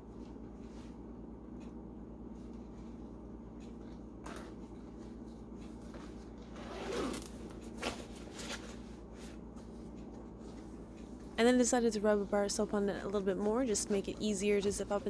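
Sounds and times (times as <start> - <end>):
zipper rasping: 6.5 - 7.4.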